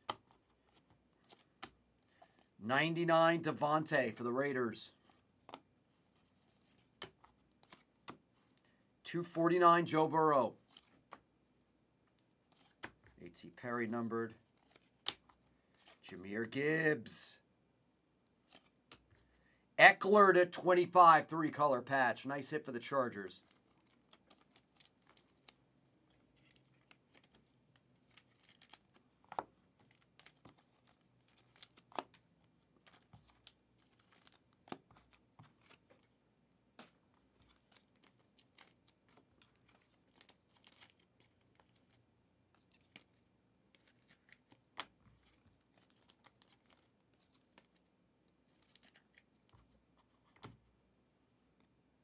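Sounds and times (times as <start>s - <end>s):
trading cards rustling: 5.0s - 8.6s, 14.3s - 16.1s, 22.4s - 36.1s, 36.8s - 50.5s.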